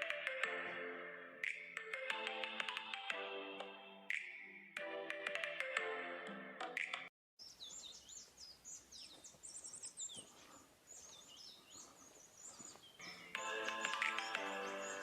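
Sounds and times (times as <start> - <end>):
songbirds chirping and trilling: 6.8 - 15.0
faint outdoor hiss: 7.4 - 15.0.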